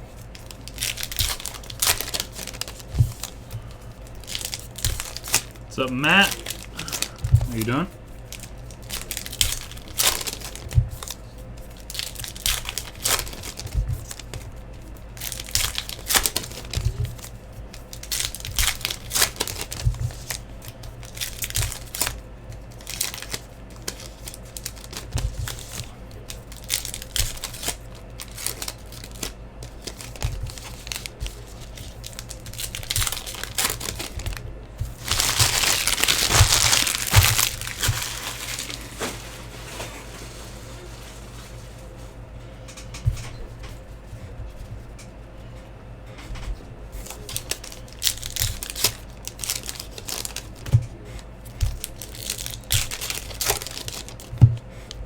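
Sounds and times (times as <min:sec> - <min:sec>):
card wrappers tearing and crinkling: 0:00.2 - 0:40.9, 0:47.0 - 0:54.4.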